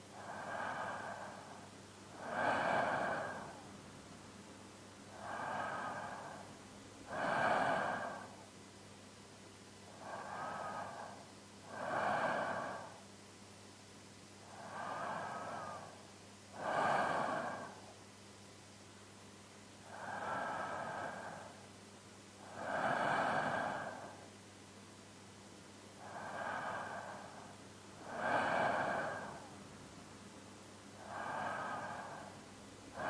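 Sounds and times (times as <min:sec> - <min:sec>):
man's slow sleeping breaths: 0:00.0 - 0:04.1, 0:05.1 - 0:08.6, 0:09.8 - 0:13.1, 0:14.4 - 0:18.0, 0:19.8 - 0:21.8, 0:22.4 - 0:24.4, 0:26.0 - 0:30.1, 0:30.9 - 0:33.0.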